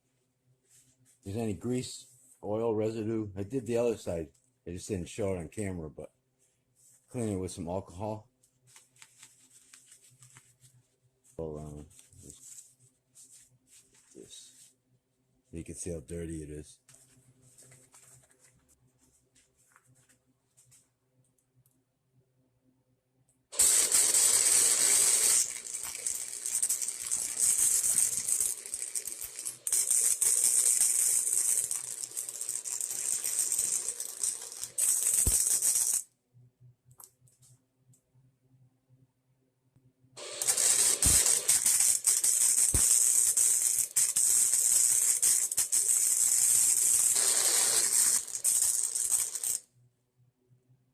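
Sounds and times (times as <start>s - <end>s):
welding arc crackling: 23.6s - 36.0s, 40.2s - 49.6s.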